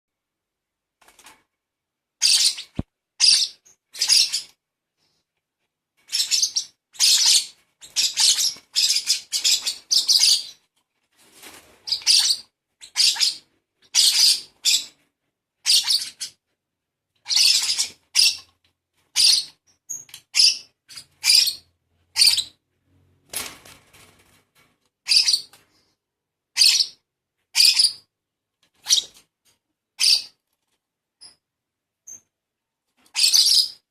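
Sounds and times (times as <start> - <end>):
baby lovebird rasping calls: 6.1 - 10.6, 11.9 - 15.0, 15.6 - 16.4, 17.2 - 18.5, 19.2 - 22.5, 25.1 - 25.5, 26.6 - 28.0, 30.0 - 30.4, 33.1 - 33.8.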